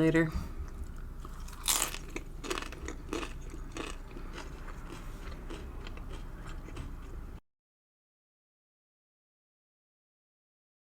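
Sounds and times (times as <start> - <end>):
chewing with wet clicks: 0.6 - 7.2.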